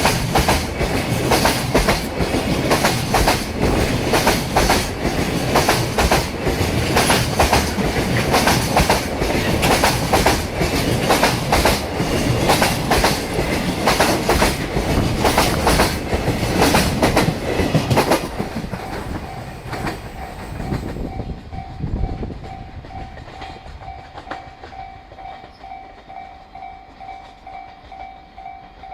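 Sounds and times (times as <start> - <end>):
train wheels clacking over rail joints: 0.0 - 26.3
level-crossing warning bell: 19.1 - 28.9.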